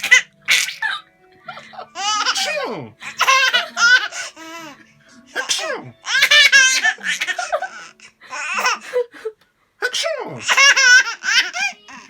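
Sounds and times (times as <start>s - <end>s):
baby laughing: 0.0s - 9.1s, 9.8s - 12.0s
man sneezing: 9.8s - 10.4s.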